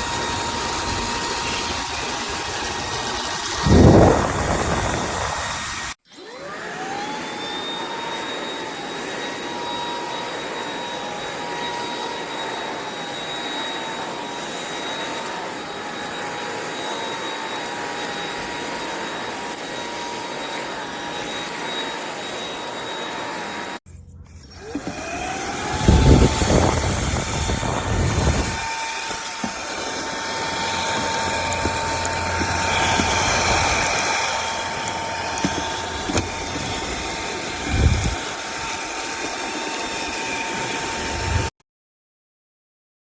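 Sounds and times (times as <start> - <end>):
vacuum motor whine: 0.0 - 41.5
rushing air: 2.1 - 6.0, 29.5 - 38.8.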